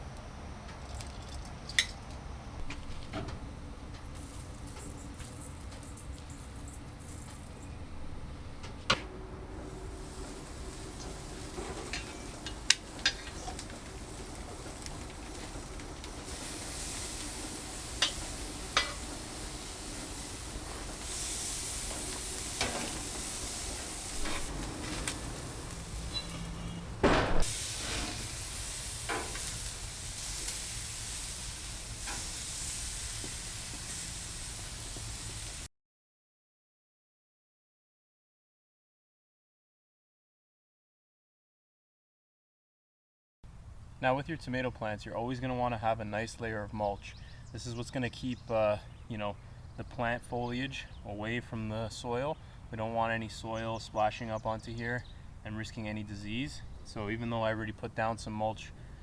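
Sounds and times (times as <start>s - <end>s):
food sizzling in butter: 4.1s - 7.7s, 9.6s - 35.7s.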